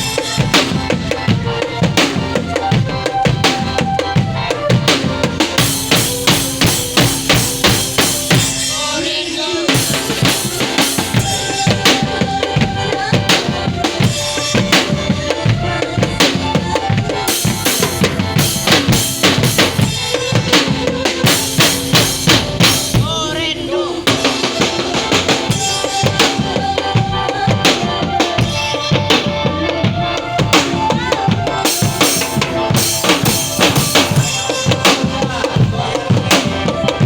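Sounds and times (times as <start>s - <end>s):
melody of held notes: 0.0s - 37.0s
steady dense drumming: 0.0s - 37.0s.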